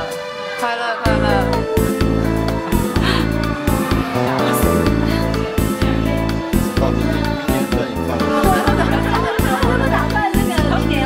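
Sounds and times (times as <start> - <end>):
background music with steady beat: 0.0 - 11.0
deep sustained bass line: 1.1 - 11.0.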